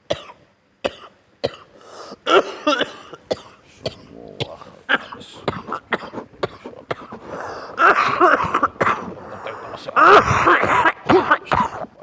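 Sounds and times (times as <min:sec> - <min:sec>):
man clearing throat: 0:00.1 - 0:12.0
man coughing: 0:00.1 - 0:12.0.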